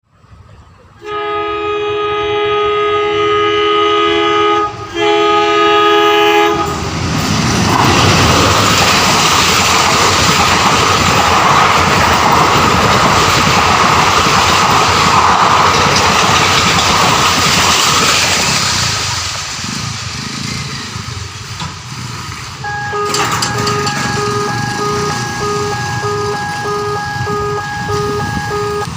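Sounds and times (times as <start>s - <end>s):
train horn blasts: 1.0s - 6.9s, 22.6s - 28.9s
train wheels rushing on rails: 4.2s - 28.9s
pulsing electronic warning beep: 22.6s - 28.9s.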